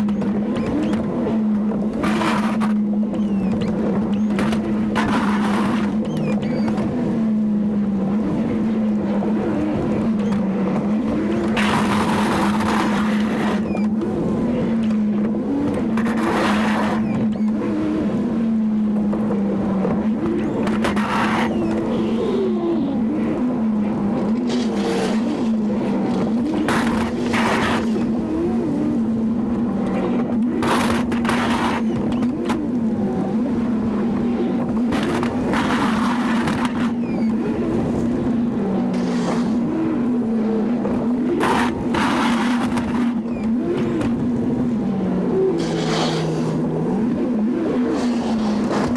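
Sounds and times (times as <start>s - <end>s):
rushing scraping noise: 24.4s - 28.5s, 38.8s - 39.7s, 45.5s - 46.7s, 47.8s - 48.9s.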